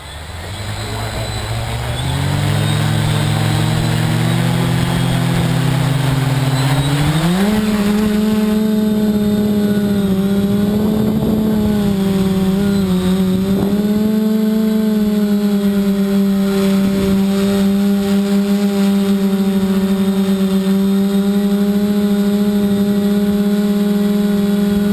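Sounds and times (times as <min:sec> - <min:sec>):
drone motors humming: 0:00.0 - 0:24.9.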